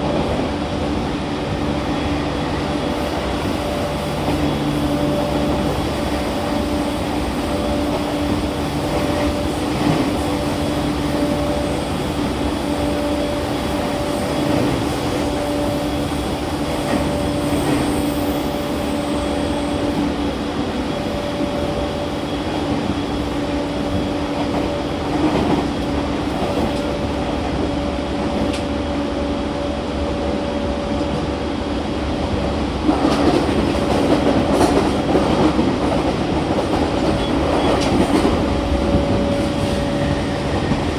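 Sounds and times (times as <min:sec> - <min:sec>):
train motor hum: 0:00.0 - 0:22.2.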